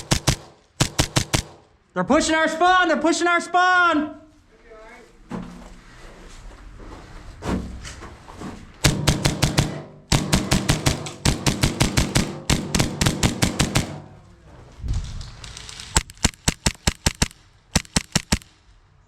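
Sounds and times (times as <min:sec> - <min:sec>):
airsoft pistol rapid shots: 0:00.0 - 0:01.7, 0:08.8 - 0:14.1, 0:16.0 - 0:18.6.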